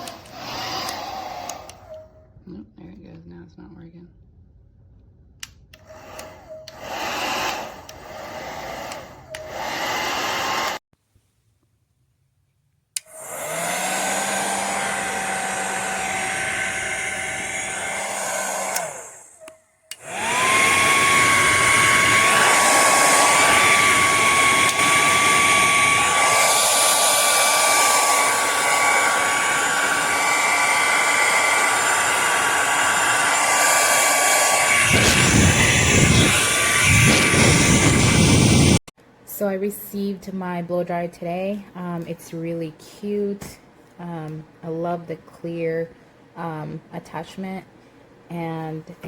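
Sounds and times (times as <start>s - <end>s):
hair dryer whining: 0.0s - 2.1s, 5.8s - 10.9s, 13.0s - 38.9s.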